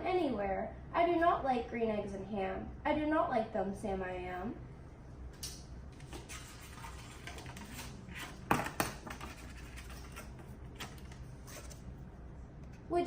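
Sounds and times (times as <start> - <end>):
rustling and scraping handling noises: 6.0 - 12.0.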